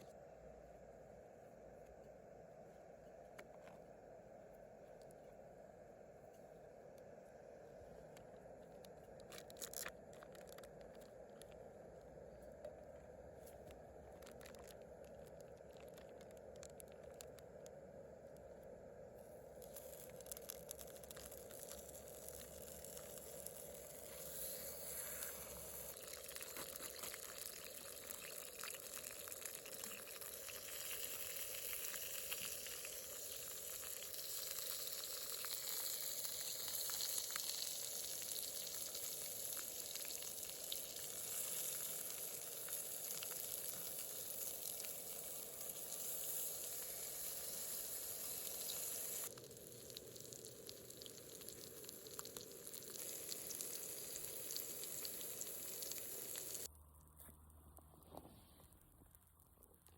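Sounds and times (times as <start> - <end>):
food sizzling with crackles: 8.8 - 11.6, 19.4 - 56.7.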